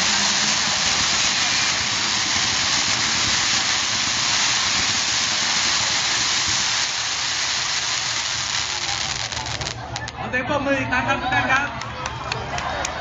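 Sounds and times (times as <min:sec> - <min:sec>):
fireworks hissing: 0:00.0 - 0:10.2.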